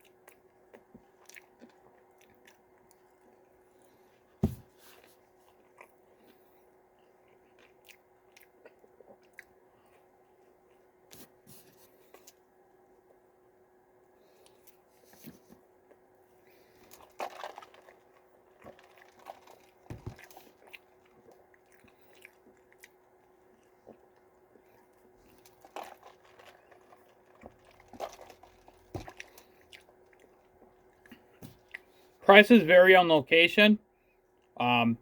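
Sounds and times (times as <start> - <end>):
person chewing and biting: 0.0 - 3.7, 7.0 - 11.4, 15.8 - 31.9.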